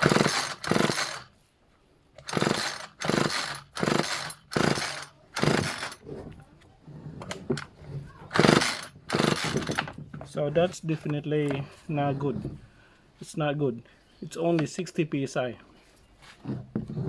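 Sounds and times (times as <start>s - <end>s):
recoil starter pulls on small engine: 0.0s - 1.3s, 2.2s - 6.0s, 8.3s - 9.9s.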